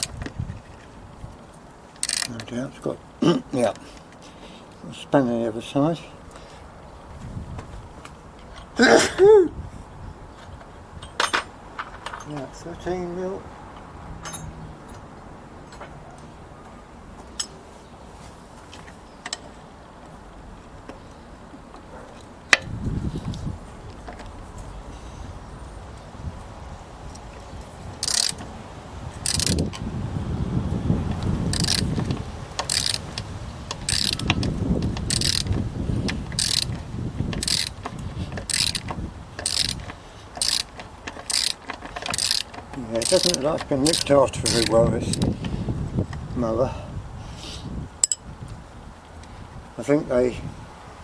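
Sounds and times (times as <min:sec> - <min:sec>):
spanner clicking on metal bolt: 0:00.0 - 0:00.3, 0:02.0 - 0:02.5, 0:28.0 - 0:28.4, 0:29.2 - 0:29.7, 0:31.5 - 0:35.6, 0:36.3 - 0:45.3.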